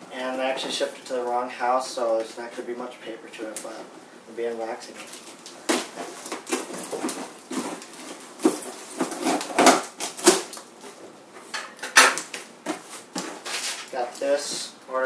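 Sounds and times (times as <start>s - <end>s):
package rustling and crackling: 4.8s - 11.1s.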